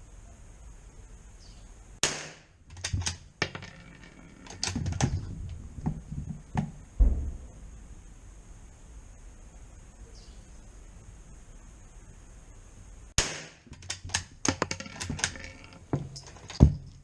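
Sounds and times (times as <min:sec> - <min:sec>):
rifle shot: 0:02.0 - 0:03.1, 0:07.0 - 0:07.8, 0:13.2 - 0:14.2
dull thump: 0:05.8 - 0:07.8.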